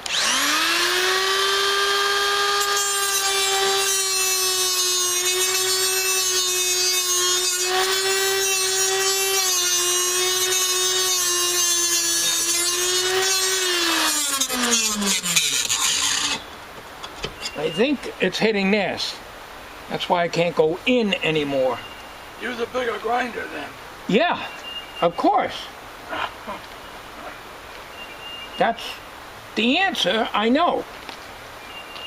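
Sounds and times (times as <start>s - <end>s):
angle grinder cutting metal: 0.0s - 16.4s.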